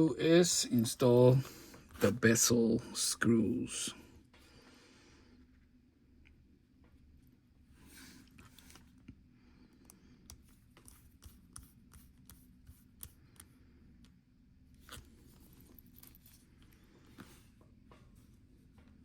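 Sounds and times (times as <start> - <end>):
small screw clicks and scraping: 14.8 - 16.8.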